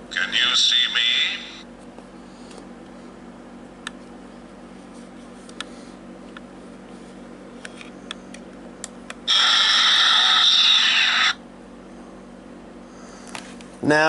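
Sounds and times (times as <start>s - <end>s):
electronic toy sound effect: 9.3s - 11.4s.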